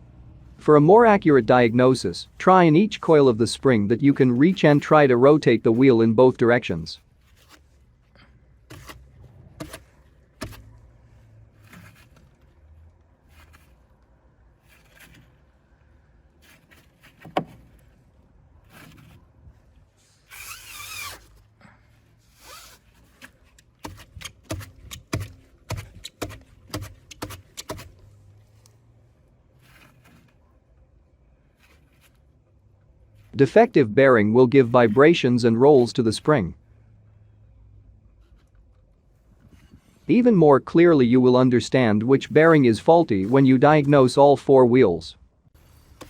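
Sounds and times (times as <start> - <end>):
short scrape: 19.9 - 21.4, 29.5 - 30.4.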